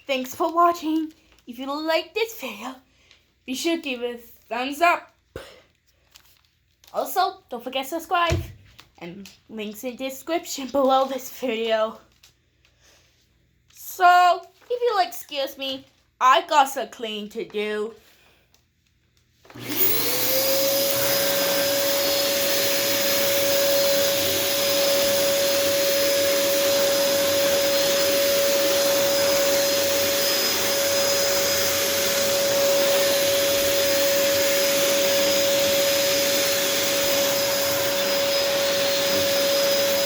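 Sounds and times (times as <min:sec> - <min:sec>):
vacuum cleaner motor whine: 0:19.5 - 0:40.0.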